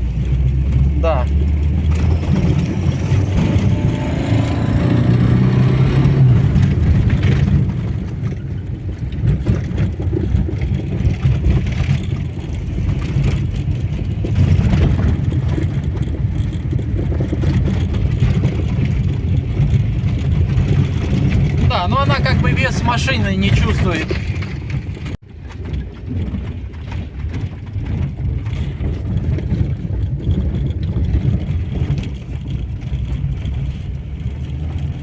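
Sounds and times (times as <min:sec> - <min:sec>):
car engine running: 0:00.0 - 0:25.2.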